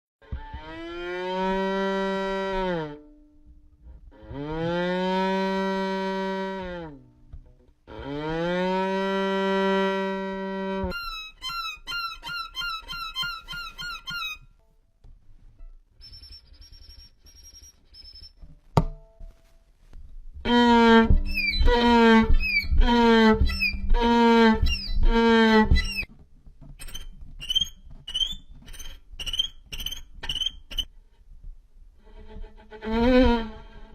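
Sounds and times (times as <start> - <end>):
violin long bending notes: 0.2 - 3.5, 4.1 - 7.1, 7.9 - 13.6, 20.4 - 26.1, 32.0 - 33.9
violin high squeaky chirps: 8.7 - 14.6, 16.0 - 18.5, 20.5 - 26.1, 26.8 - 30.9, 32.1 - 33.9
violin short sliding notes: 20.5 - 26.1.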